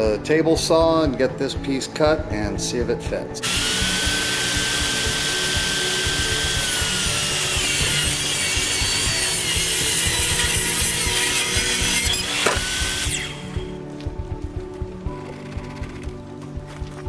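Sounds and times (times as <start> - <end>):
table saw blade whining: 3.4 - 13.8.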